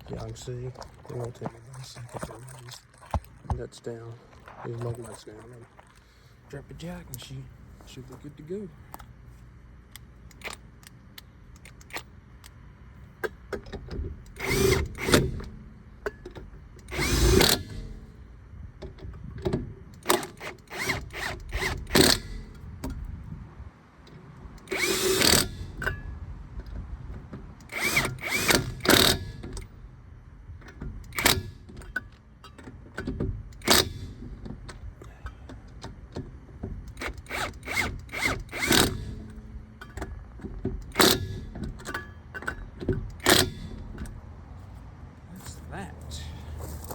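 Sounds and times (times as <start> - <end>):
impact wrench bursts: 14.3 - 15.5, 16.8 - 18.0, 20.0 - 22.6, 24.6 - 25.9, 27.6 - 29.6, 33.6 - 34.2, 36.9 - 39.5, 40.8 - 42.1, 43.1 - 44.0.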